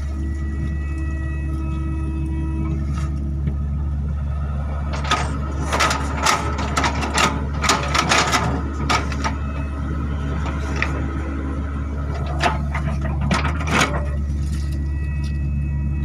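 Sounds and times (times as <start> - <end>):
excavator diesel engine running: 0.0 - 16.0
sharp mechanical clicks and knocks: 4.9 - 9.7.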